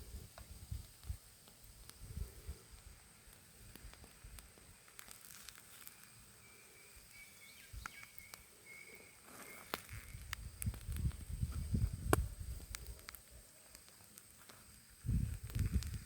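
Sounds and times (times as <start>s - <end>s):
campfire crackling: 0.0s - 16.0s.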